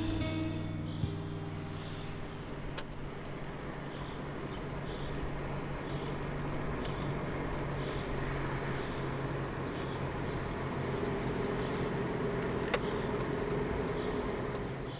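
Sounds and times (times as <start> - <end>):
higher steady tone: 0.0 - 5.0
low steady hum: 0.0 - 12.0
low mechanical rumble: 0.0 - 14.9.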